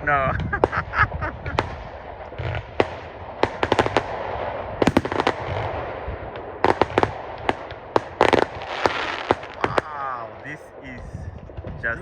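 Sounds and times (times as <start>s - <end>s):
fireworks bangs and crackles: 0.0s - 12.0s
low rumble: 9.4s - 12.0s.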